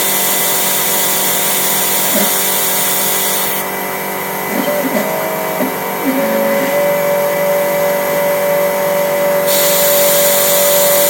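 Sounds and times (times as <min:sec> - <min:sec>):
stepper motor whine: 0:02.2 - 0:11.0.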